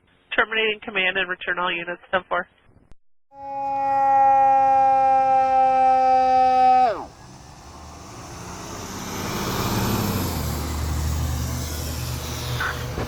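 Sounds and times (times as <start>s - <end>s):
truck engine rumble: 3.6s - 13.0s.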